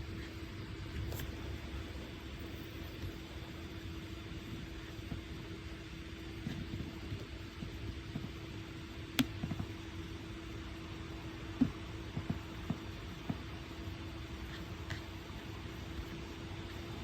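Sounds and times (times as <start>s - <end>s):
low room hum: 0.0s - 17.0s
small taps and knocks: 9.2s - 9.8s, 11.5s - 13.5s.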